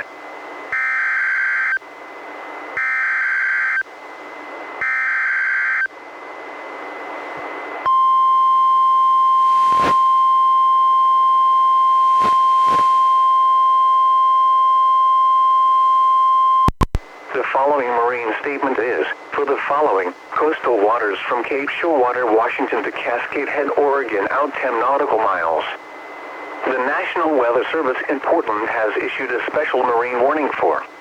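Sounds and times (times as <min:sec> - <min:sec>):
steady single-pitch alarm tone: 0:00.7 - 0:01.8, 0:02.8 - 0:03.9, 0:04.7 - 0:06.0, 0:07.8 - 0:16.7
static crackles: 0:09.3 - 0:10.2, 0:11.8 - 0:13.4, 0:16.6 - 0:31.0
radio hiss: 0:09.4 - 0:10.1, 0:11.8 - 0:13.4, 0:16.9 - 0:31.0.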